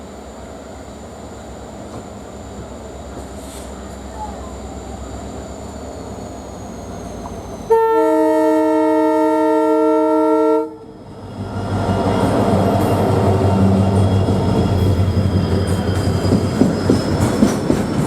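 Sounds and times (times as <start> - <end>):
moving train rumble and rail noise: 0.0 - 18.0
locomotive horn: 7.7 - 10.9.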